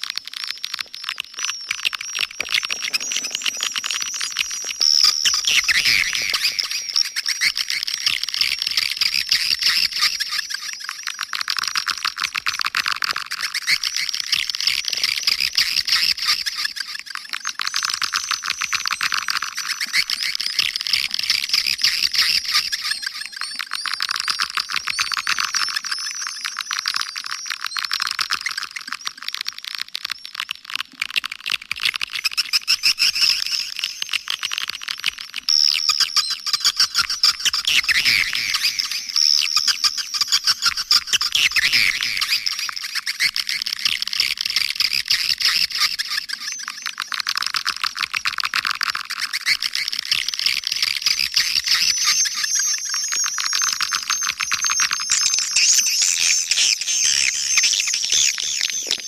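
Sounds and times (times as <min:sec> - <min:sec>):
swiftlet chirps and twitters: 0:01.3 - 0:10.7, 0:35.5 - 0:43.3, 0:50.4 - 0:59.0.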